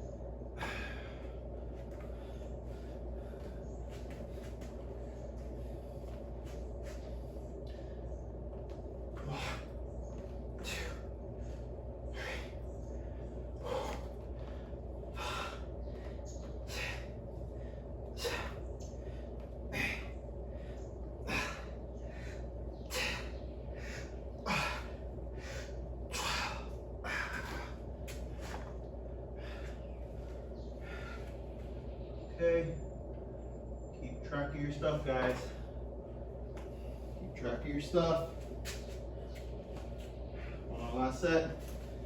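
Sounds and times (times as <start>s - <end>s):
low hum: 0.0s - 42.0s
man breathing forcefully: 0.4s - 31.9s.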